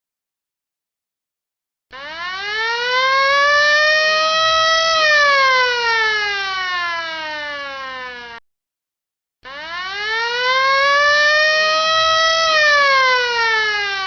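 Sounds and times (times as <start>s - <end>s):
fire alarm siren wailing: 1.9s - 8.4s, 9.4s - 14.0s.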